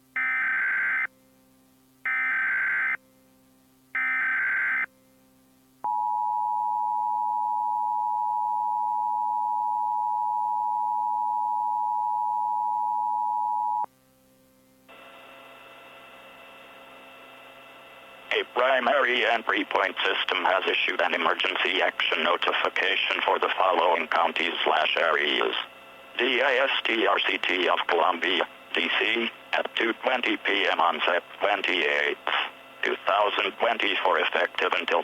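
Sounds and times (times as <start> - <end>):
low hiss and hum: 0.0 - 35.0.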